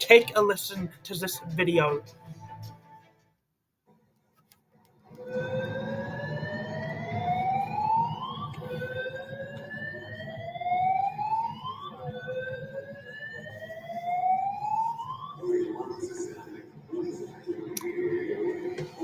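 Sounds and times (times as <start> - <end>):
fire alarm whooping tone: 5.2 - 15.8.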